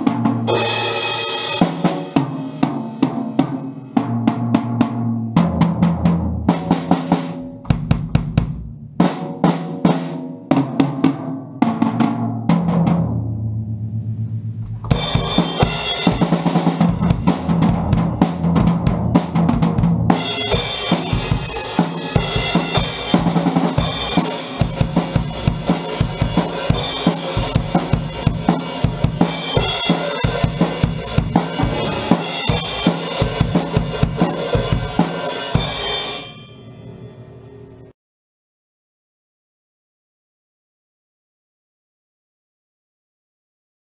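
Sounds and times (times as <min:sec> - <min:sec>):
drum kit steady beat: 0:00.0 - 0:13.3, 0:14.6 - 0:36.4
drum fills on toms and snare: 0:00.0 - 0:13.5, 0:14.6 - 0:36.3
cymbals crashing: 0:00.5 - 0:03.8, 0:14.8 - 0:18.4, 0:20.1 - 0:37.9.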